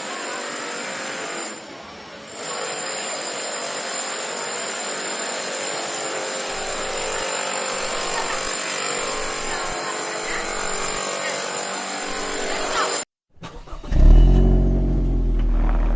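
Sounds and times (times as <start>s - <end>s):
machine whirring: 6.5s - 11.0s, 11.9s - 12.9s.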